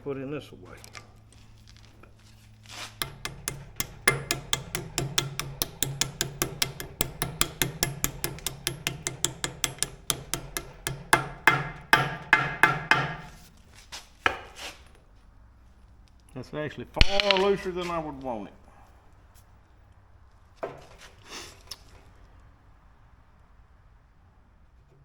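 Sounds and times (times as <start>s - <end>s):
hammer striking steel bushing: 2.8s - 13.6s.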